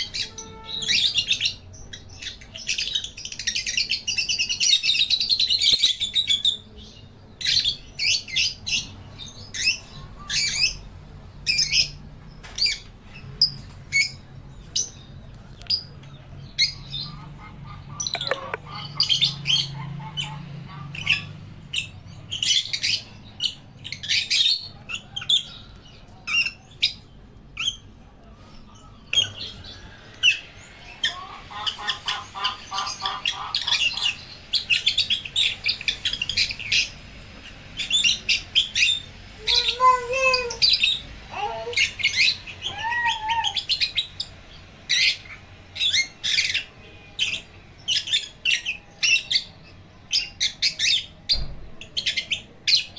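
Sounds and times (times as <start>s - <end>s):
birds chirping: 0.0s - 52.9s
low warbling bird calls: 15.8s - 27.0s, 28.7s - 44.3s.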